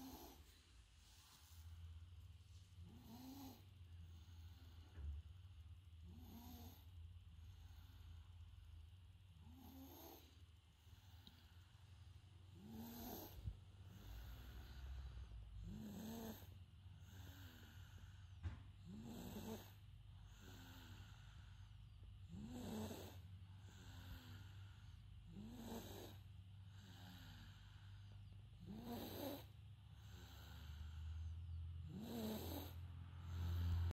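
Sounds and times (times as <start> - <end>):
person snoring: 0.0 - 0.5, 2.8 - 5.0, 6.0 - 6.9, 9.4 - 11.6, 12.5 - 18.2, 18.8 - 21.6, 22.2 - 34.0.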